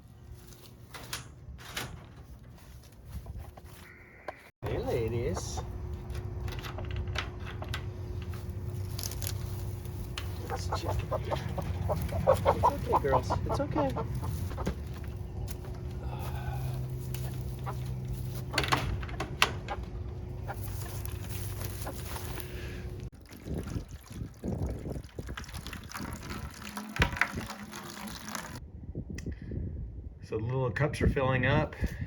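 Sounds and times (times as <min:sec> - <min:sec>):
hens clucking: 0:03.8 - 0:23.1
water running into a bucket: 0:22.6 - 0:28.6.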